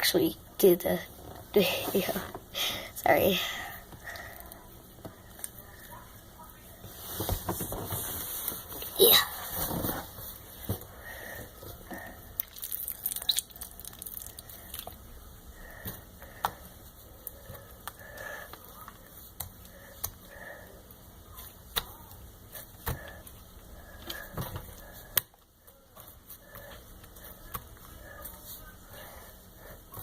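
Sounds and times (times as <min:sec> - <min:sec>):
putty squelching: 0:12.4 - 0:15.0.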